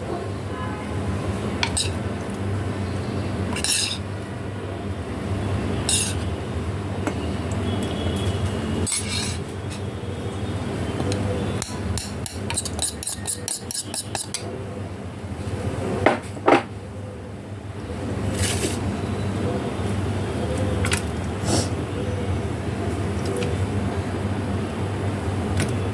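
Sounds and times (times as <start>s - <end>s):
metal utensils clinking on cookware: 3.6s - 4.0s, 8.8s - 9.8s, 12.0s - 14.4s.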